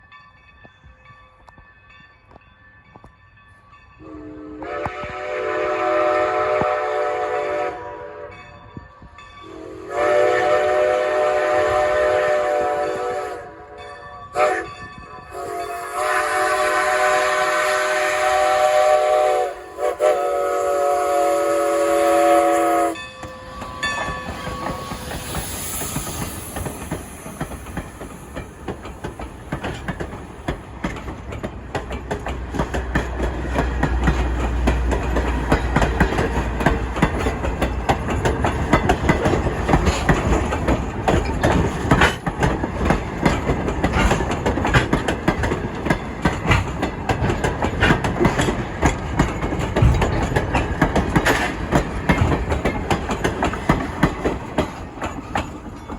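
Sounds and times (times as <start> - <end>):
train wheels clacking on rails: 0.0 - 55.9
deep train rumble: 2.9 - 55.9
train horn blasts: 4.0 - 8.6, 9.4 - 23.0.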